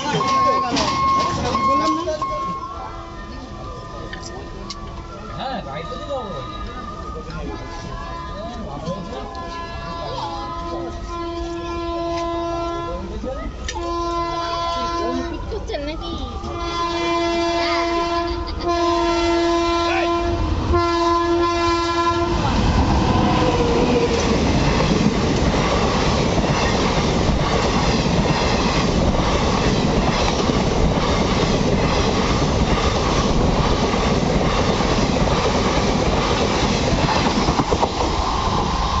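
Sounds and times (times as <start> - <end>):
train passing at speed: 0.0 - 39.0
train horn blasts: 9.3 - 13.1, 13.7 - 15.3, 16.4 - 22.5.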